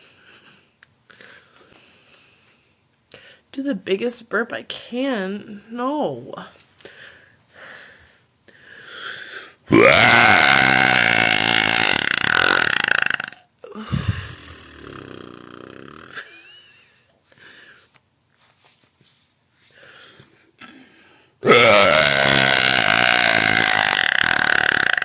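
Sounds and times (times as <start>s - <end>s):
woman burping loudly: 9.7s - 16.3s, 21.4s - 25.0s.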